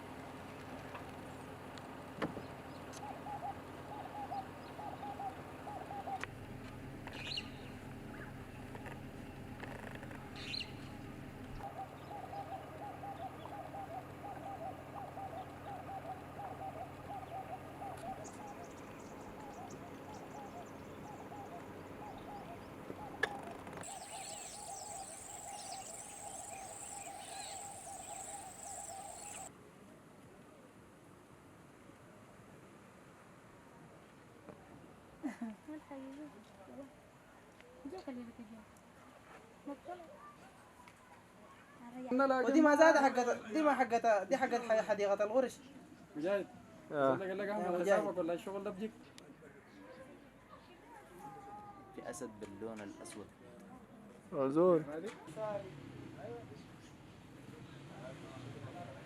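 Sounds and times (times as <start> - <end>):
bird calling three-note phrase: 23.8 - 29.5
high bird chirp: 23.8 - 29.5
insects trilling: 23.8 - 29.5.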